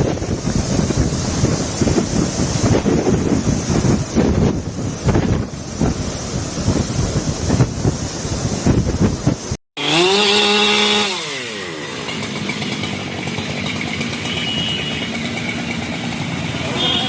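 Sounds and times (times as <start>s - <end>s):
rough gusty noise: 0.0s - 14.3s
small engine running high: 9.8s - 17.0s.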